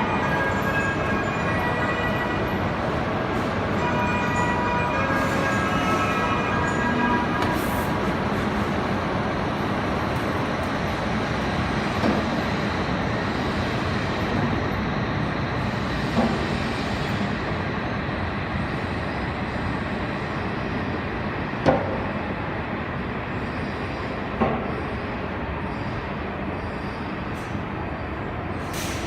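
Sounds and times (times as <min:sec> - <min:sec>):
train clunks: 0:00.0 - 0:08.9, 0:11.8 - 0:12.6, 0:16.0 - 0:17.0, 0:21.6 - 0:22.2, 0:24.3 - 0:25.0, 0:28.6 - 0:29.0
train running noise: 0:00.0 - 0:29.0.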